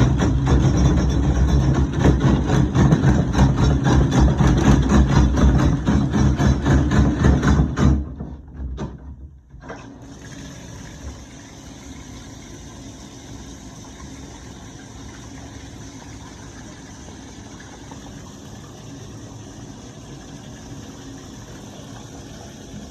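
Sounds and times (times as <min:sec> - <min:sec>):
knocks: 0:00.0 - 0:09.3.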